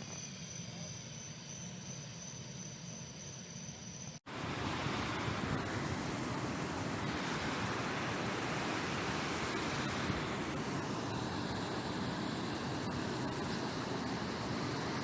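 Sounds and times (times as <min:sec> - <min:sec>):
faint high steady tone: 0:00.0 - 0:04.2
loud rushing water: 0:04.3 - 0:15.0.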